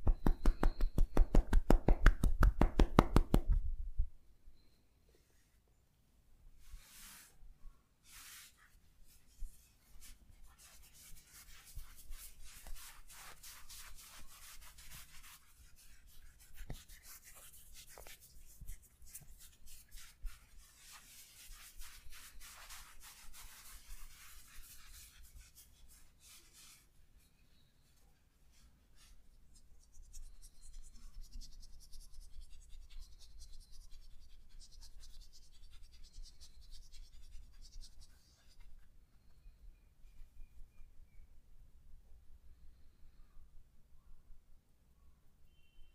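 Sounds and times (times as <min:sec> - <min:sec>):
hands rubbing over skin: 0:08.1 - 0:26.9, 0:29.8 - 0:38.9.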